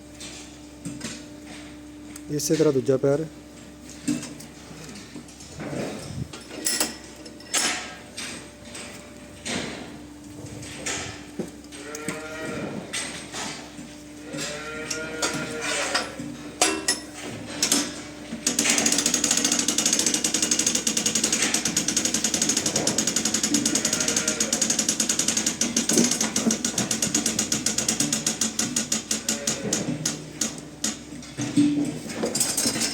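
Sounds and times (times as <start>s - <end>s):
steady low hum: 0.0s - 19.7s
calf bleating: 11.8s - 12.7s, 14.2s - 15.9s, 23.5s - 24.6s, 29.2s - 29.7s
rapid mechanical clicking: 18.4s - 31.0s.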